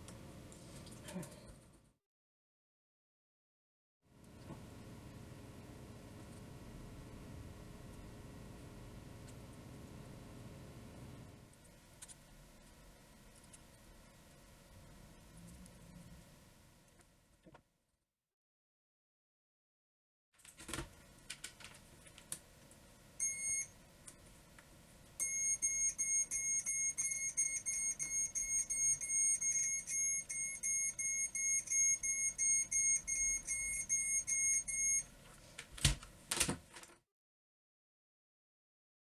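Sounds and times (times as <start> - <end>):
electronic beeper short high beeps: 25.2 - 35.0.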